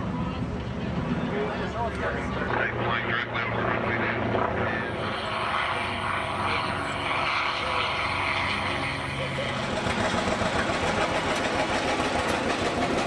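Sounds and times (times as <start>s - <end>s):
propeller aircraft engine drone: 0.0s - 13.0s.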